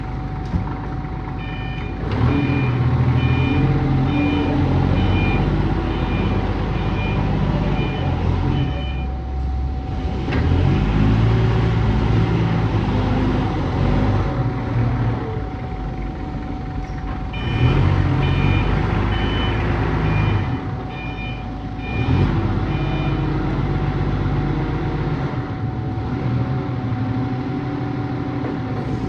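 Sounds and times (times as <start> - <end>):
heavy equipment engine revving: 0.0 - 29.0
reverse alarm beeping: 1.4 - 10.2, 15.5 - 23.4
steady whine: 5.9 - 23.6.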